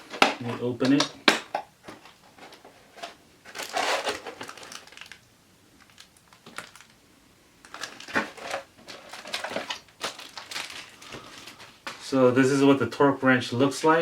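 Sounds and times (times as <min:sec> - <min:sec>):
plastic case rustling: 0:00.0 - 0:07.0, 0:07.6 - 0:12.0
plastic case clicks: 0:00.1 - 0:02.2.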